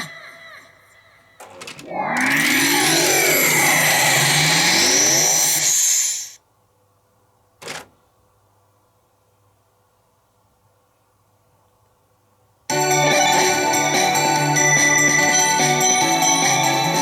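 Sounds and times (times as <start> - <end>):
faint steady hum and hiss: 5.2 - 12.8.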